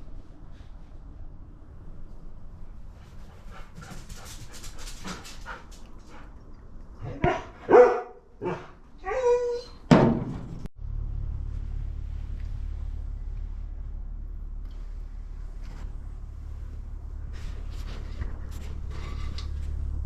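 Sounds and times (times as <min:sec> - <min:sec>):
steady low hum: 0:00.0 - 0:09.0, 0:10.5 - 0:20.0
dog barking: 0:07.1 - 0:08.8.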